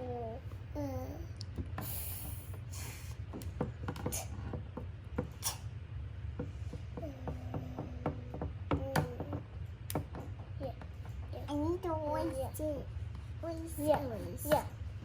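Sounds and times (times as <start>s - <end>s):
steady low hum: 0.0s - 15.0s
breathy hissing sounds: 1.8s - 3.2s
light taps: 3.2s - 5.4s, 6.4s - 11.3s.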